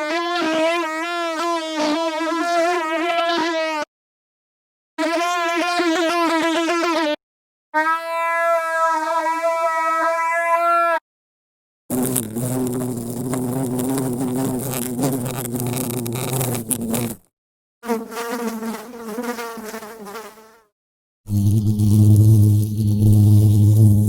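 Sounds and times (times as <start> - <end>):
flying insect buzzing: 0.0 - 3.9, 11.9 - 17.2, 17.8 - 20.7, 21.3 - 24.0.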